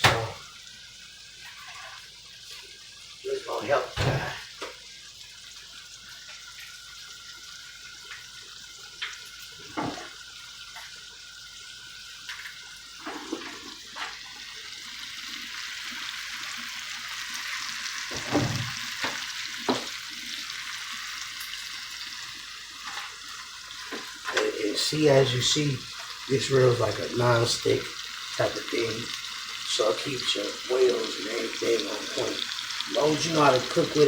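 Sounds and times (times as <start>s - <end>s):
food sizzling in a pan: 0.0s - 34.0s.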